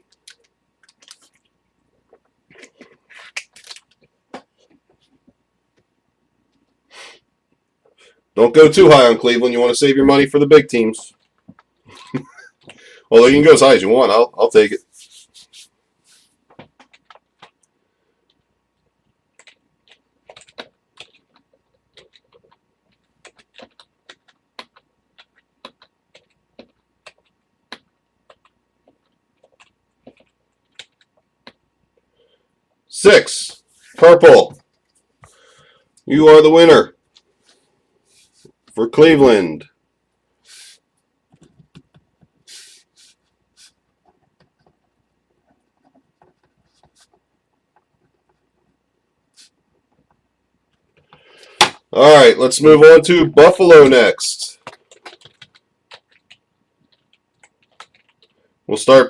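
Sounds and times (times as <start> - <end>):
computer keyboard keys clicking: 16.7 - 17.7, 19.4 - 31.6, 54.6 - 58.4.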